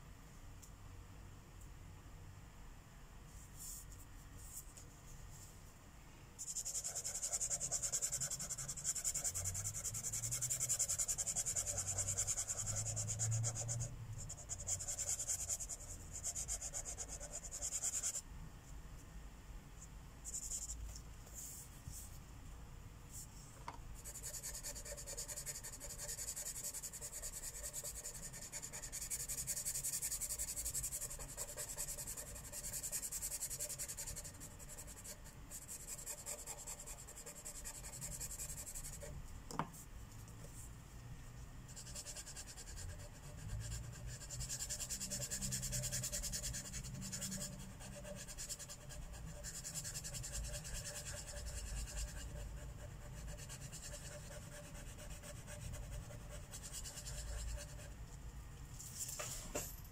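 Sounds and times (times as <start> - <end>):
marker scratching on paper: 6.4 - 18.2, 24.0 - 39.1, 41.7 - 57.9.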